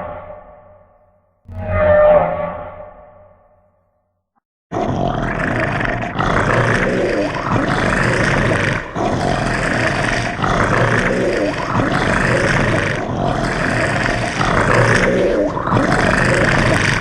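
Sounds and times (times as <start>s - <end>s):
monster roaring: 4.7s - 17.0s.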